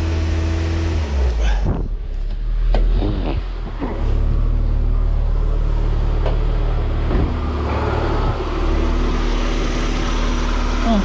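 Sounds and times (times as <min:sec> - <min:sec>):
car engine at raised revs: 0:00.0 - 0:11.0.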